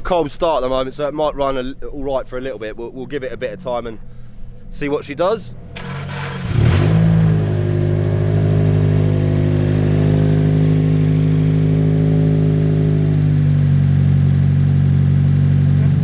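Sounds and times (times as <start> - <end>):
car engine starting and idling: 5.6 - 16.0.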